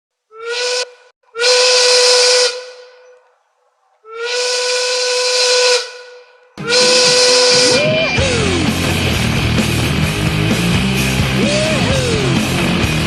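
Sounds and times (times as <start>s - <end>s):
goal horn blasts: 0.4s - 3.0s, 4.2s - 8.4s.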